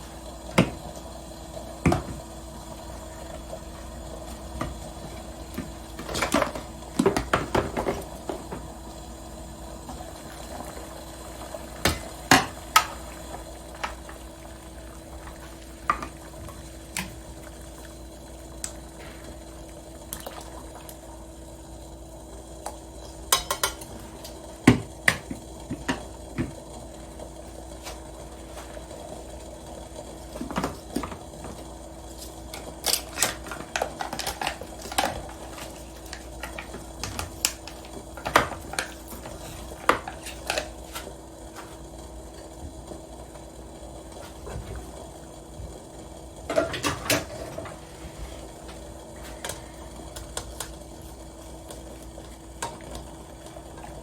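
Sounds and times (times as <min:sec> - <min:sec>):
soup simmering: 0:00.0 - 0:30.4, 0:47.4 - 0:54.0
faint steady hum: 0:00.0 - 0:54.0
utensils clinking on cookware: 0:23.3 - 0:24.0.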